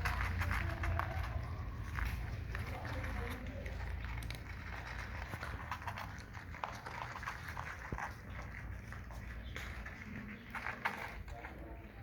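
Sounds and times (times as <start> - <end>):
cats chewing and lapping food: 0.0 - 12.0.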